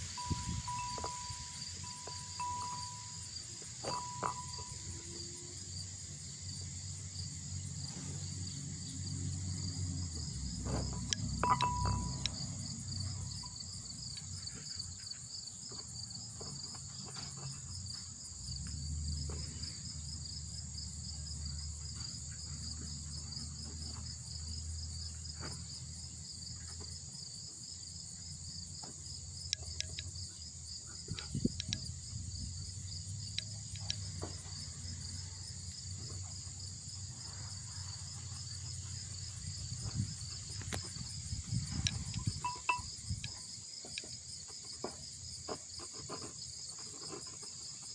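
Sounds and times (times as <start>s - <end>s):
high insect buzz: 0.0s - 10.3s
insects trilling: 0.0s - 47.9s.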